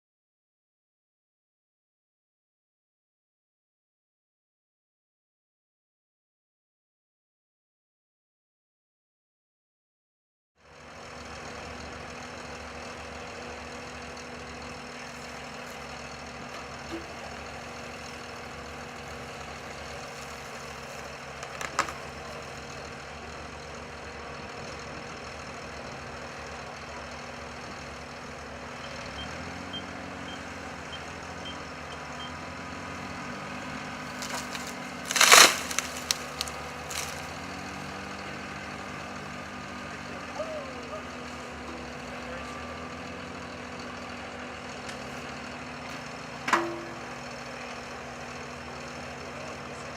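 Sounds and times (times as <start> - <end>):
diesel engine running: 10.6 - 49.9
loud sharp crack: 34.2 - 37.2.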